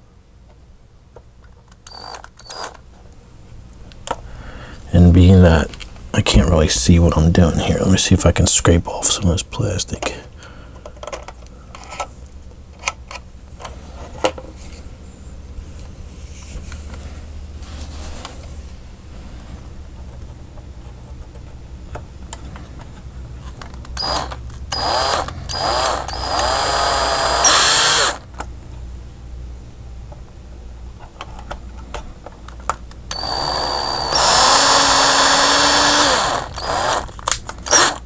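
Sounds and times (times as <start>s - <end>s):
power drill drilling metal: 1.9s - 2.7s, 24.0s - 28.2s, 33.1s - 38.0s.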